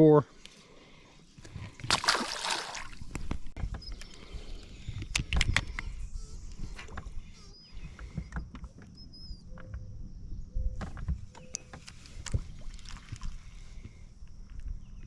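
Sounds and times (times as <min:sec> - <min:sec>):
fishing gear knocks and clicks: 0:04.9 - 0:05.8.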